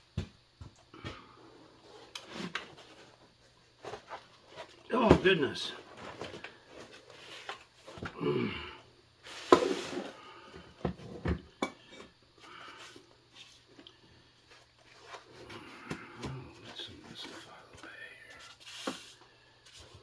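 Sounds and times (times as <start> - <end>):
person grunting: 8.1 - 8.8.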